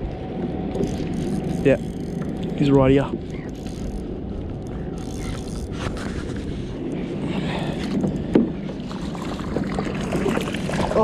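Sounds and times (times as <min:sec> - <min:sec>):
wind rumbling on microphone: 0:00.0 - 0:11.0
water splashing against kayak: 0:07.7 - 0:11.0.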